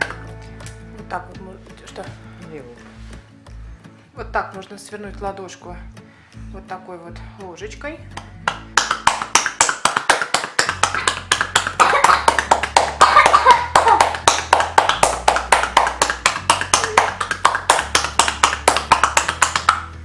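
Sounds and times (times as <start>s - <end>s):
cupped palm slaps on back: 8.2s - 20.0s.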